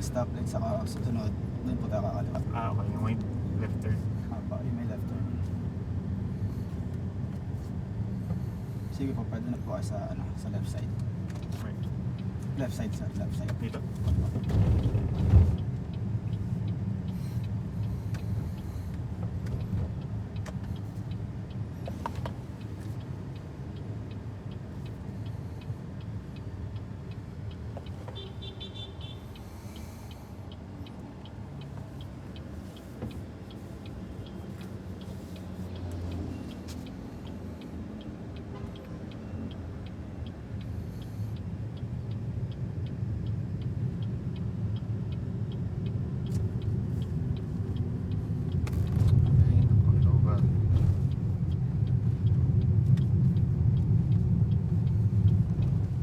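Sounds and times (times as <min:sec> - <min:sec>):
road and tyre rumble: 0:00.0 - 0:56.0
light ticking: 0:15.2 - 0:56.0.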